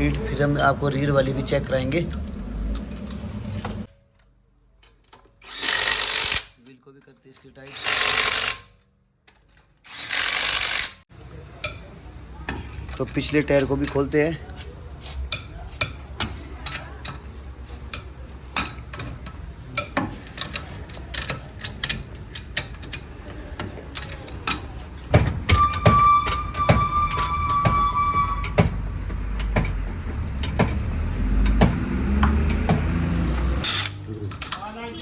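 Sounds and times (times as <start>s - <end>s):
metallic clicks and knocks: 17.9s - 27.3s.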